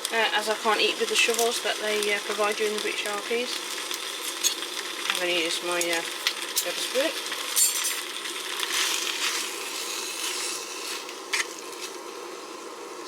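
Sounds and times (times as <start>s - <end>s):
food sizzling in a tin: 0.0s - 13.0s.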